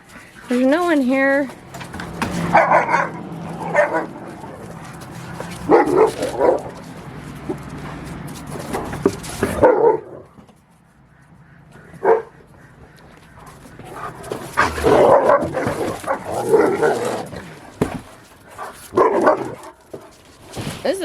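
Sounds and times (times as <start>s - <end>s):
dogs barking: 2.3s - 7.0s, 9.4s - 10.3s, 11.7s - 20.1s.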